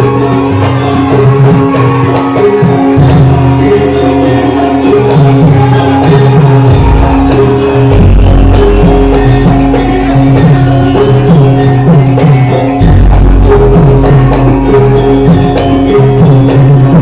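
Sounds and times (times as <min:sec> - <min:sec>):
hand drum strokes: 0:00.0 - 0:17.0
metallophone tones: 0:00.0 - 0:17.0
deep low boom: 0:06.7 - 0:10.1.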